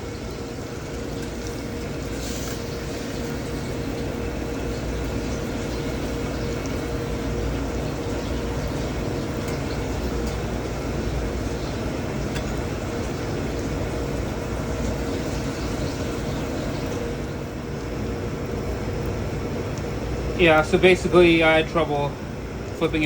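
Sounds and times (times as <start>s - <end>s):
pan sizzling: 0.0s - 17.4s
constant low hum: 0.0s - 23.0s.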